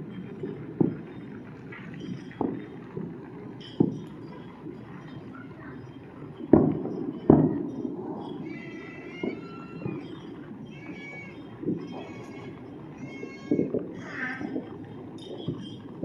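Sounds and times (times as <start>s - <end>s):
fireworks bangs: 0.0s - 16.0s.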